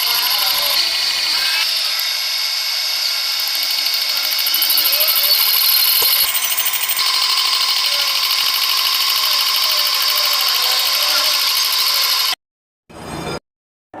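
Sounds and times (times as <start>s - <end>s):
lathe cutting whine: 0.0s - 12.4s
lathe running: 0.0s - 12.4s.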